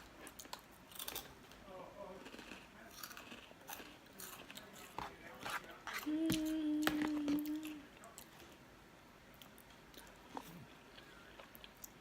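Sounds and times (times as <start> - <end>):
steady low hum: 0.0 - 12.0
chewing and mouth sounds: 2.2 - 8.4.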